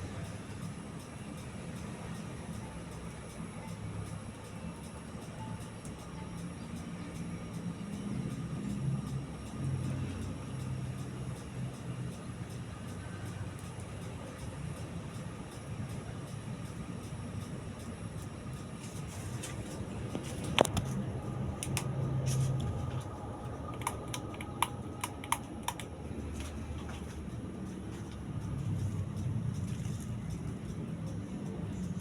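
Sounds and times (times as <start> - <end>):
ceiling fan motor humming: 0.0 - 32.0
small sharp clicks: 23.7 - 26.6.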